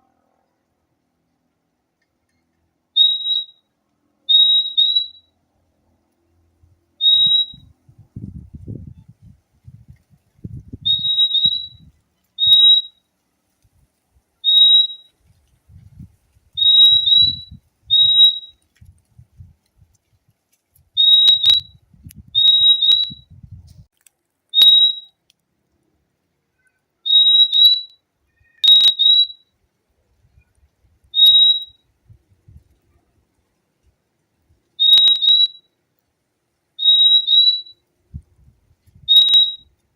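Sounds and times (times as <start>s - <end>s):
bird whistling short notes: 10.8s - 13.0s, 16.6s - 18.6s, 21.0s - 21.8s, 22.4s - 23.3s, 24.6s - 25.1s, 26.6s - 29.4s, 34.8s - 35.6s, 39.0s - 39.7s.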